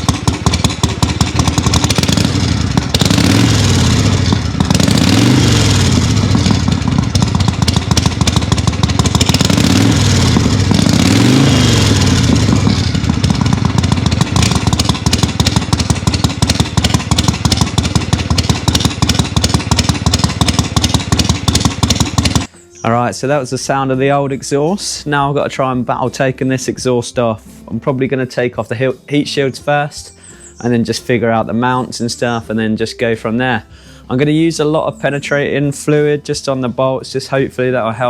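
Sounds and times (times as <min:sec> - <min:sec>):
motorcycle engine idling and revving: 0:00.0 - 0:22.6.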